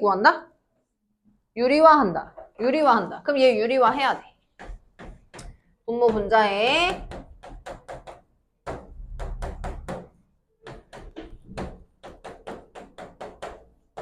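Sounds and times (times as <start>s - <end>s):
chalk tapping and scratching on board: 4.5s - 14.0s.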